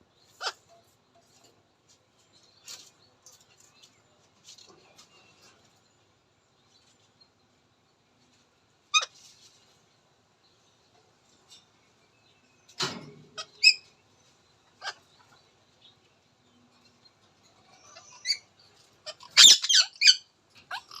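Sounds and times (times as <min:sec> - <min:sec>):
parakeet squawking and chirping: 0:08.9 - 0:09.2, 0:13.4 - 0:13.9, 0:17.7 - 0:21.0.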